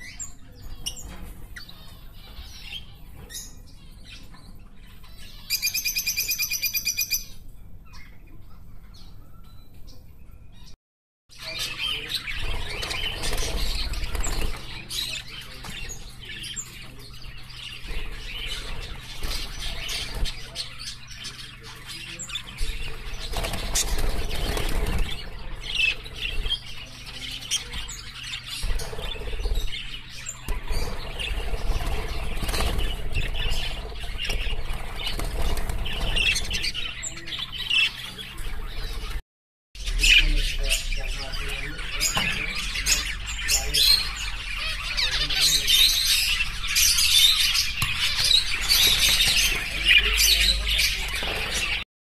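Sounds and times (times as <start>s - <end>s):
birds chirping and squawking: 0.0s - 39.2s, 39.8s - 51.9s
wings flapping: 12.3s - 15.8s, 22.6s - 26.7s, 28.6s - 37.0s.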